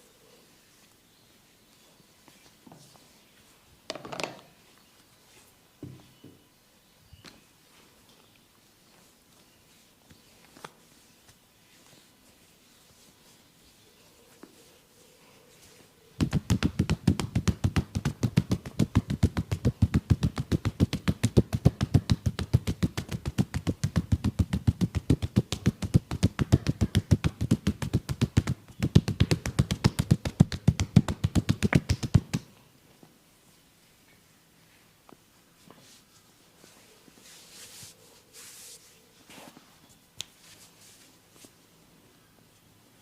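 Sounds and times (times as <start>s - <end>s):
hands striking in massage: 16.2s - 32.5s.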